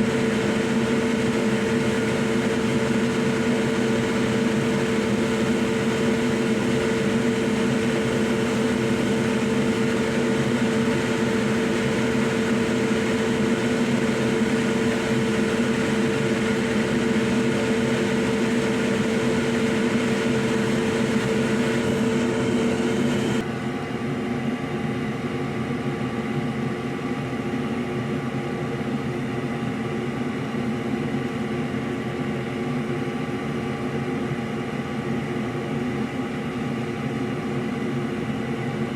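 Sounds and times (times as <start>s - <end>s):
electric motor humming: 0.0s - 23.4s.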